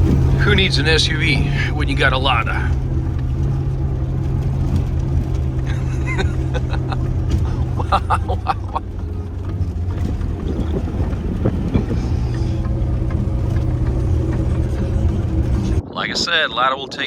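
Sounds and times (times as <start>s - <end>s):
car engine running: 0.0s - 15.9s
knocks and rattles: 2.2s - 15.8s.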